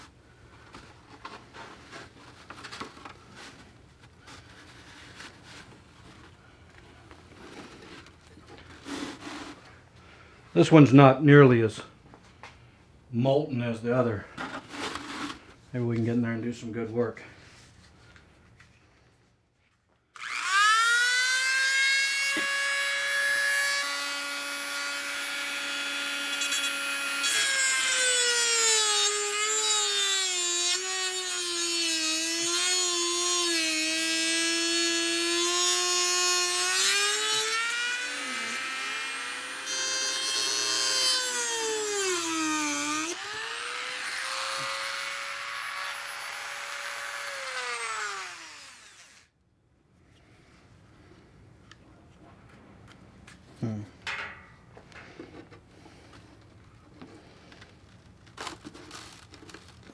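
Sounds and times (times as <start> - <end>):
rotary tool whining and grinding: 20.2 - 49.3.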